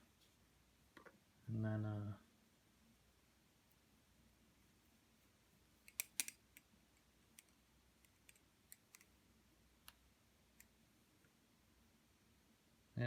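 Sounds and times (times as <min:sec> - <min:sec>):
butterfly knife metal clicks: 0:05.9 - 0:06.4.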